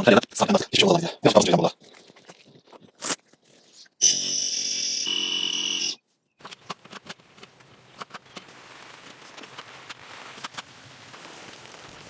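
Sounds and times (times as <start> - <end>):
sharp ticks and crackles: 6.4 - 12.0
heavy rain hissing: 8.2 - 12.0.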